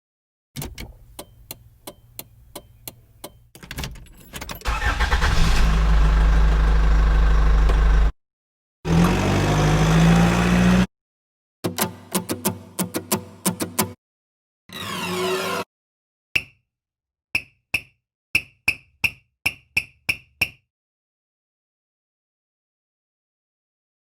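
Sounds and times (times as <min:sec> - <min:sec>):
starter clicking: 0:04.6 - 0:05.7
car engine running and revving: 0:04.7 - 0:08.1, 0:08.9 - 0:10.9.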